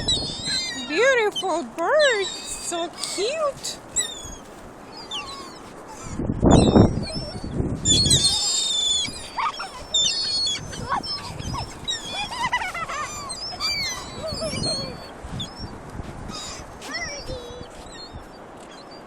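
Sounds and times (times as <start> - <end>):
gulls crying: 0.0 - 15.7.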